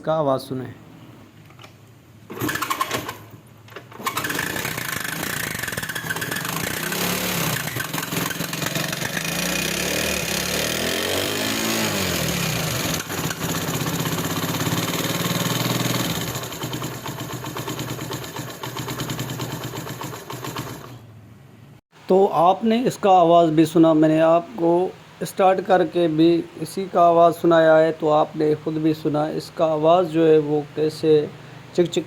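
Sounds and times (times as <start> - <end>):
motorcycle engine starting and revving: 2.3 - 21.2.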